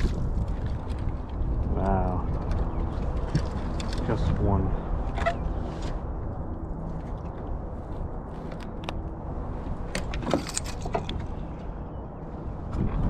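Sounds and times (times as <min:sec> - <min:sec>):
wind buffeting microphone: 0:00.0 - 0:13.0
fishing gear clicks and taps: 0:02.0 - 0:04.3.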